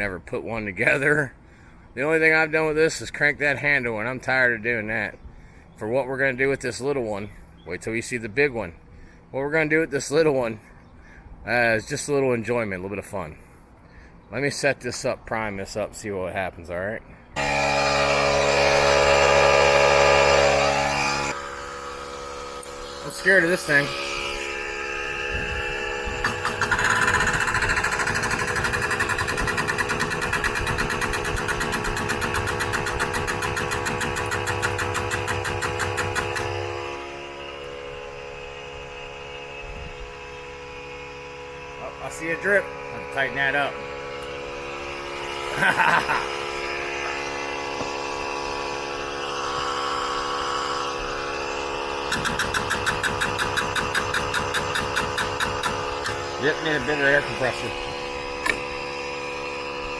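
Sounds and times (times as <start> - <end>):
air compressor humming: 17.2 - 59.9
hydraulic foot pump chattering: 17.4 - 37.0, 41.7 - 59.0.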